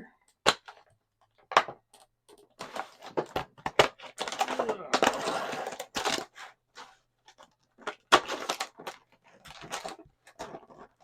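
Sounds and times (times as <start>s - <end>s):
packaging crackling and rustling: 2.4s - 11.0s.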